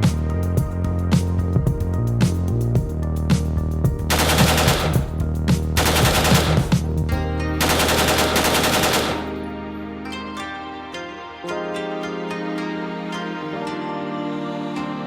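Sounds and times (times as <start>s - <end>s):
rapid rifle gunfire: 4.1s - 5.1s, 5.8s - 6.8s, 7.6s - 9.3s.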